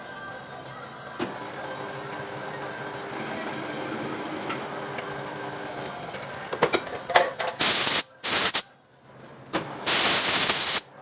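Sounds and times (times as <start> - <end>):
high-pressure jet hissing: 7.6 - 8.6, 9.9 - 10.9.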